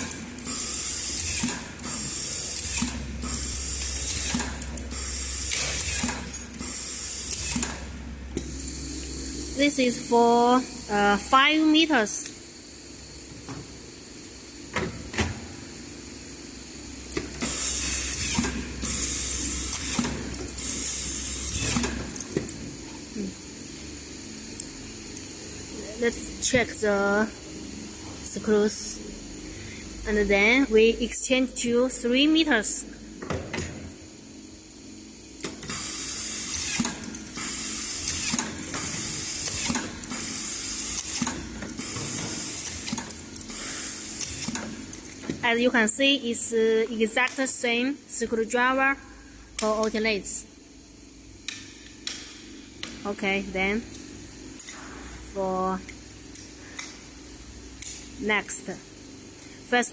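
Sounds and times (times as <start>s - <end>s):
machine sharp clicks: 0.0s - 8.8s, 17.2s - 22.4s.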